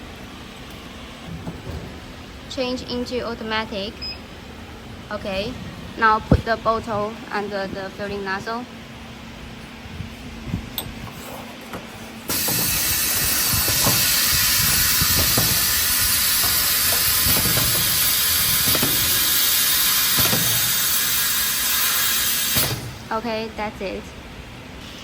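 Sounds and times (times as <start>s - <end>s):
loud steady air hiss: 12.2s - 25.0s.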